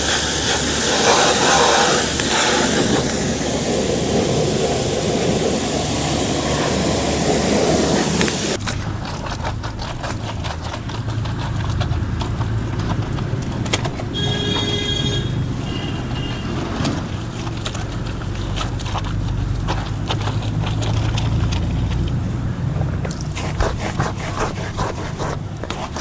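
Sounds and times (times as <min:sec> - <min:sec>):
pressure washer spraying water: 0:00.0 - 0:08.6, 0:13.7 - 0:17.7
pump motor humming: 0:00.0 - 0:09.2, 0:10.5 - 0:21.5.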